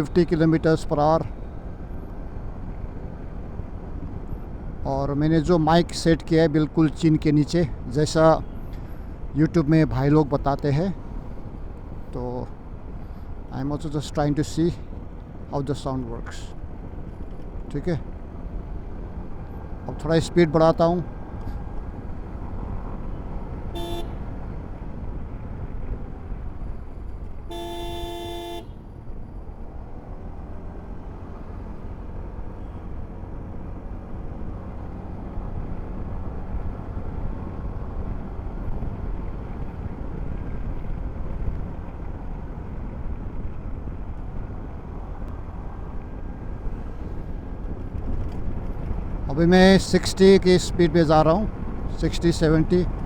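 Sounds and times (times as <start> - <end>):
scooter engine and wind rumble: 0.0 - 53.0
vehicle horn tooting: 23.7 - 24.4, 27.5 - 28.8.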